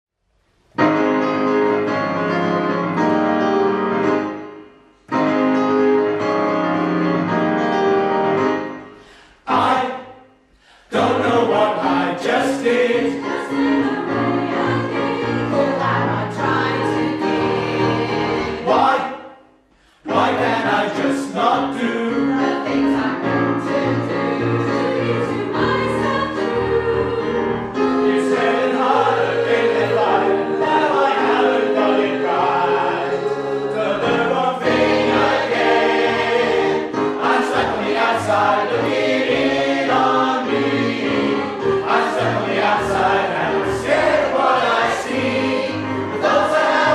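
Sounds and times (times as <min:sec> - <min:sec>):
mixed choir singing: 0:09.4 - 0:10.3, 0:10.9 - 0:19.4, 0:20.0 - 0:46.9.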